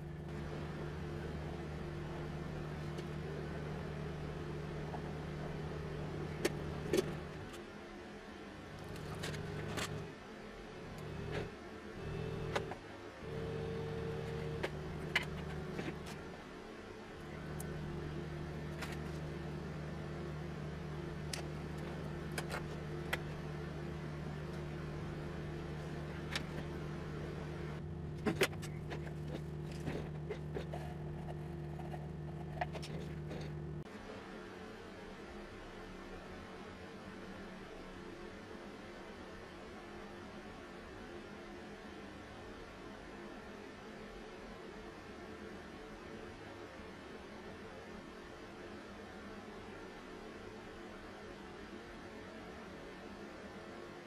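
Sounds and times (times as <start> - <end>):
small electric motor humming: 10.9 - 16.4.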